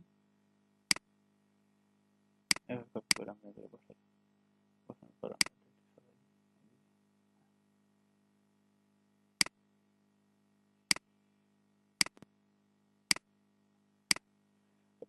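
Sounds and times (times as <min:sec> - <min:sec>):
faint electrical hum: 0:00.0 - 0:15.0
computer mouse clicking: 0:12.0 - 0:12.2.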